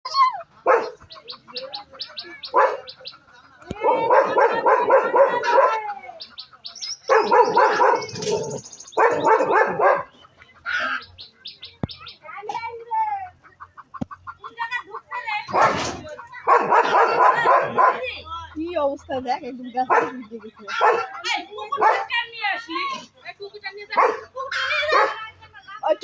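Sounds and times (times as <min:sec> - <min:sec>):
small bird chirping: 0:00.1 - 0:03.7, 0:06.1 - 0:12.4
dog barking: 0:00.6 - 0:01.0, 0:02.5 - 0:03.0, 0:03.8 - 0:05.9, 0:07.1 - 0:10.1, 0:15.5 - 0:18.2, 0:19.9 - 0:22.1, 0:23.9 - 0:25.2.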